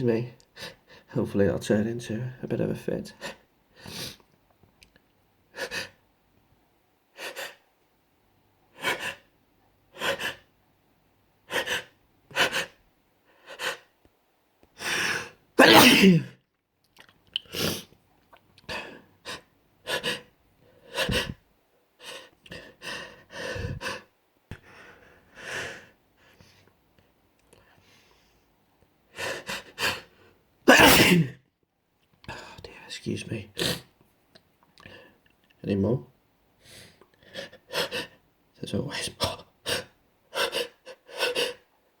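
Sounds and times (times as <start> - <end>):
person sneezing: 15.6 - 16.4, 30.7 - 31.4
quick breaths: 22.0 - 26.8.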